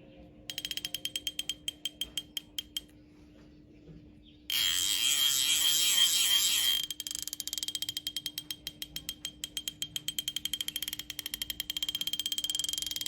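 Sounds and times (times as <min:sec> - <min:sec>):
fishing reel clicker ticking: 0:00.5 - 0:02.9, 0:04.5 - 0:13.0.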